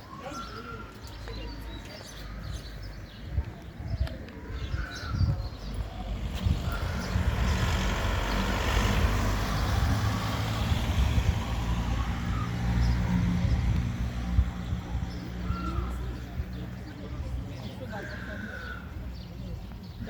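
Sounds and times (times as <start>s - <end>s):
vehicle engine humming: 5.6s - 17.4s.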